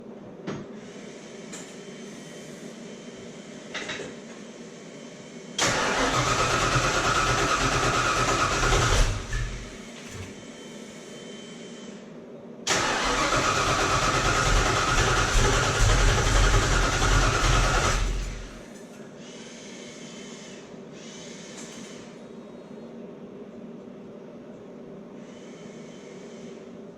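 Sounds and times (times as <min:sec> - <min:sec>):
starter cranking engine: 0:05.6 - 0:09.7, 0:12.7 - 0:18.6.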